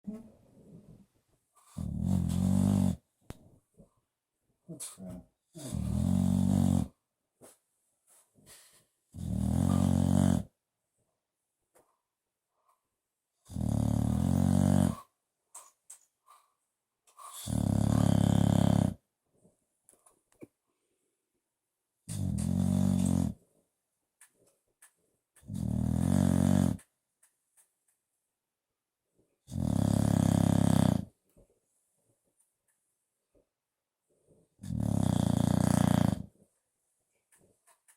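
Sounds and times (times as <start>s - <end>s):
dog snuffles: 1.6s - 3.0s, 5.6s - 6.9s, 8.1s - 10.5s, 13.5s - 16.5s, 17.1s - 19.0s, 22.1s - 23.4s, 34.6s - 36.3s
dog snoring loudly: 1.8s - 3.0s, 5.6s - 6.9s, 9.2s - 10.5s, 13.5s - 15.1s, 17.4s - 19.0s, 22.1s - 23.4s, 25.5s - 26.8s, 29.5s - 31.1s, 34.6s - 36.3s.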